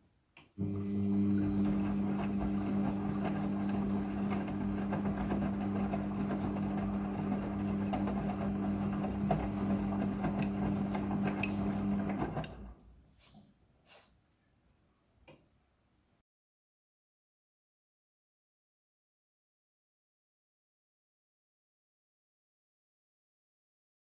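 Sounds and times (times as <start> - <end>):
washing machine humming and churning: 0.6 - 12.8.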